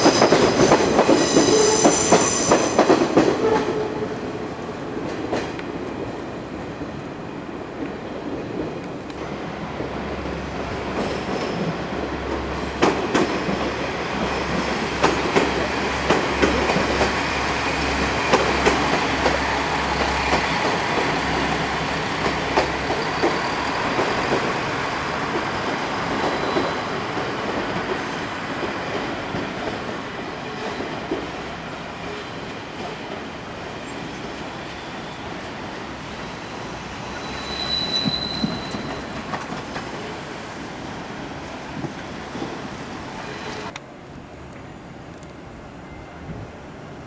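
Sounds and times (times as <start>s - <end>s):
train rumble: 0.0s - 31.6s
train wheels clacking over rail joints: 12.8s - 17.2s, 18.0s - 21.1s.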